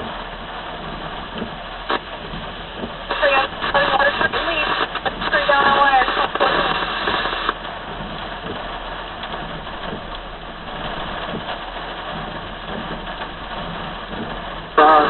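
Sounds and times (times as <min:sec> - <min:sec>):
radio static hiss: 0:00.0 - 0:15.0
radio dispatch transmission: 0:03.1 - 0:07.6, 0:14.6 - 0:15.0.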